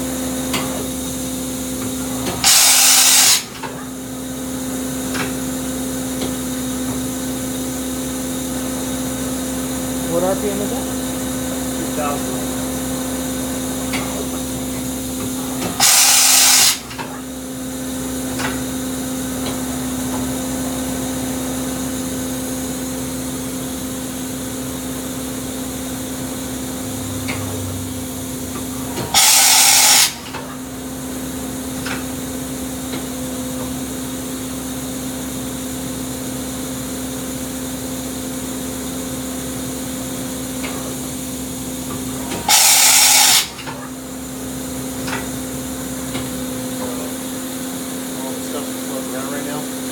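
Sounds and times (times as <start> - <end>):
machine hum and whine: 0.0 - 49.9
loud hiss: 2.4 - 3.5, 15.8 - 16.8, 29.2 - 30.2, 42.5 - 43.5.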